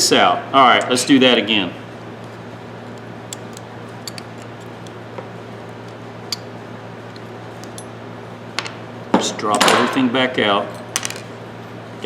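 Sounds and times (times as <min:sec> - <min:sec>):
steady low hum: 0:00.0 - 0:12.0
small metal parts clicking: 0:03.3 - 0:05.0.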